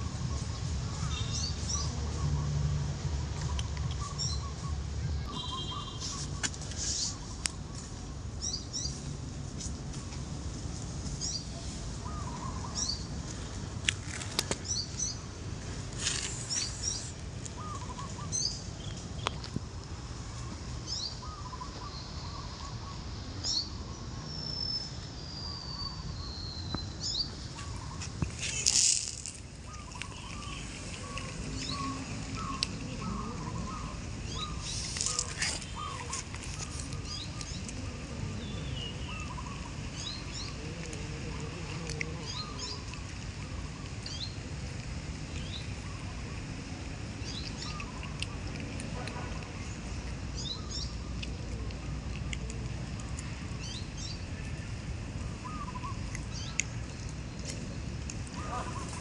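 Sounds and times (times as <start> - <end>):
small birds chirping: 0.0 - 2.5, 3.3 - 9.0, 11.2 - 13.5, 14.1 - 15.3, 16.0 - 19.6, 20.2 - 59.0.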